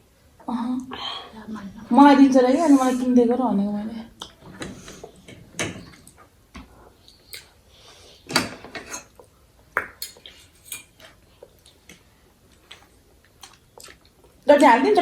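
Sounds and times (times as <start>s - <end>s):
utensils clinking on plates: 5.2s - 6.1s, 8.3s - 9.3s, 10.0s - 11.2s.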